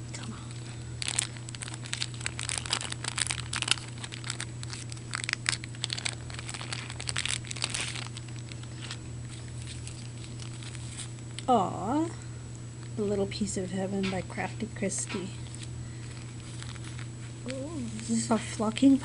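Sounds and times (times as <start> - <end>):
steady low hum: 0.0 - 19.0
plastic packaging crinkling: 0.5 - 11.4, 15.4 - 19.0.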